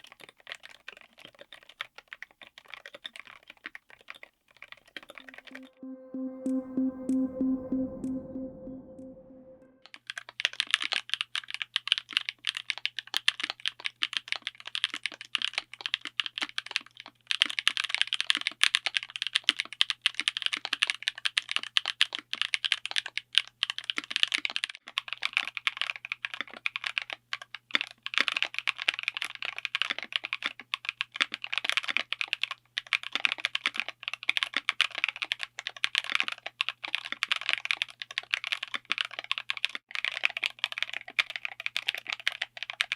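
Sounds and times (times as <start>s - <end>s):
fast typing on mechanical keyboard: 0.0s - 5.1s, 10.4s - 42.9s.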